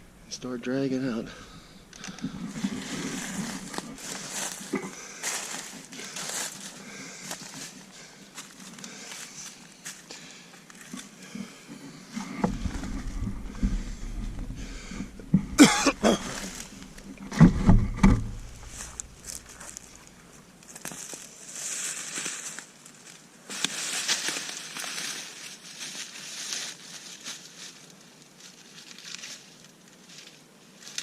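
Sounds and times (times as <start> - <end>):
rustling and handling noise: 1.1 - 31.0
low rumble: 12.3 - 20.2
sharp knocks: 12.4 - 19.6.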